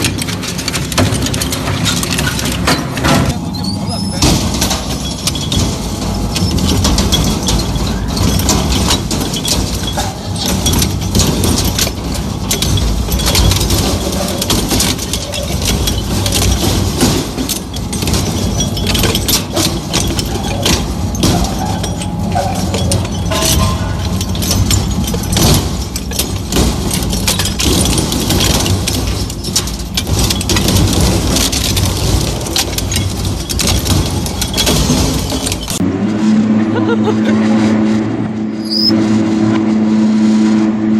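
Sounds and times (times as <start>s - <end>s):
sharp metal clanks: 0.0s - 31.8s, 38.6s - 39.0s
crushing machine rumbling: 0.0s - 39.6s.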